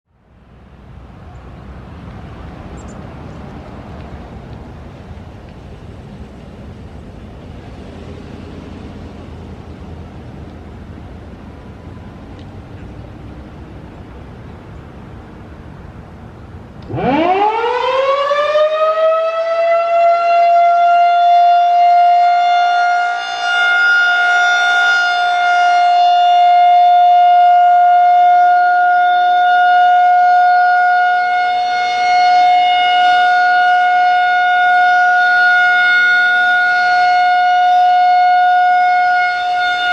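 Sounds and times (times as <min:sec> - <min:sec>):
outdoor warning siren: 0:16.8 - 0:39.9.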